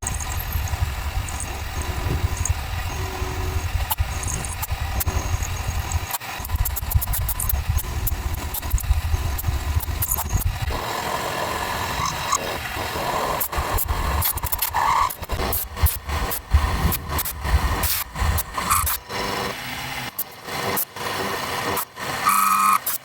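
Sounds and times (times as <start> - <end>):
sharp clicks: 0.0 - 10.8, 13.3 - 19.3
machine motor pulsing rumble: 0.0 - 20.2.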